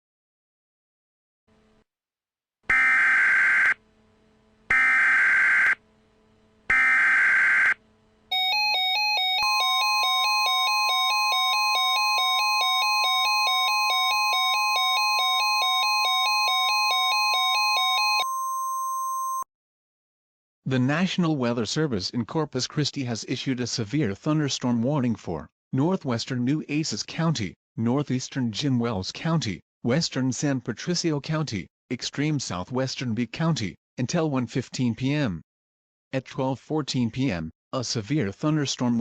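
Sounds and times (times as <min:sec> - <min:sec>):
two-pitch electronic alert tone: 0:06.7 - 0:19.4
steady high tone: 0:06.8 - 0:19.4.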